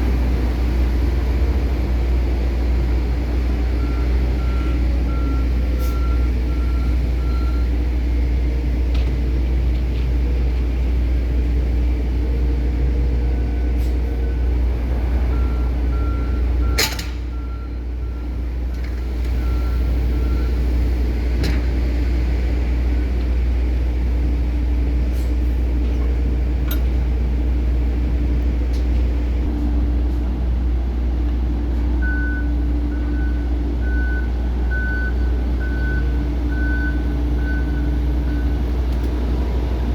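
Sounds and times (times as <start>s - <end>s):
heavy diesel machinery rumbling: 0.0s - 39.9s
truck reversing beeper: 3.2s - 8.3s, 12.9s - 18.5s, 19.4s - 20.8s, 31.7s - 39.0s.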